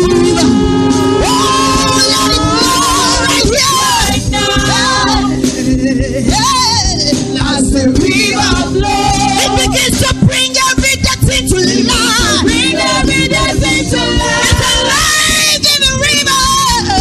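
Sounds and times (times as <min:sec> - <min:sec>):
bass: 0:00.0 - 0:17.0
drum hits: 0:00.0 - 0:17.0
gospel choir singing: 0:00.0 - 0:17.0.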